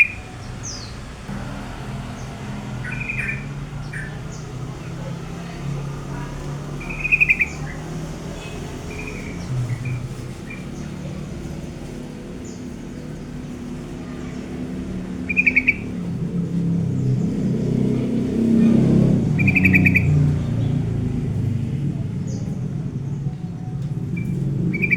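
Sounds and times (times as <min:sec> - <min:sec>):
bird chirping trills: 0:00.0 - 0:24.9
low rumble: 0:00.6 - 0:07.0.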